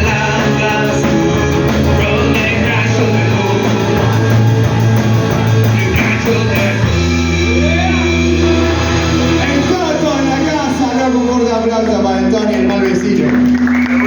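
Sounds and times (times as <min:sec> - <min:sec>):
rock music with guitar: 0:00.0 - 0:12.3.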